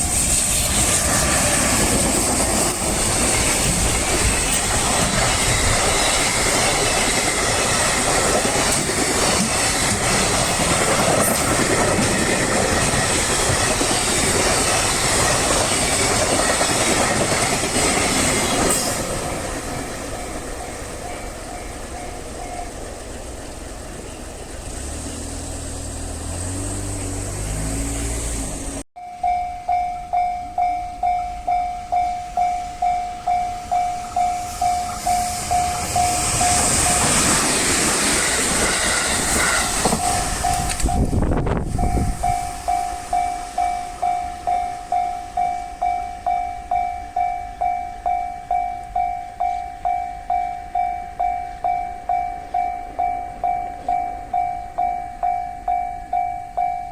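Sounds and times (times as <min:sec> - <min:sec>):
train wheels on rails: 0:00.0 - 0:56.9
level crossing warning bell: 0:02.6 - 0:24.6, 0:29.0 - 0:38.0, 0:39.7 - 0:56.9
train motor tone rising: 0:17.7 - 0:28.9, 0:33.2 - 0:46.4.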